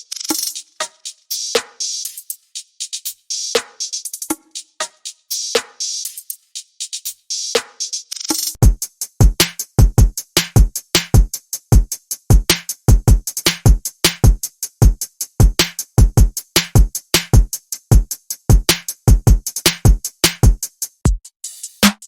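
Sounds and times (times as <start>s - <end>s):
drum machine beat: 0.0s - 22.0s
deep low kick drum: 8.6s - 11.3s.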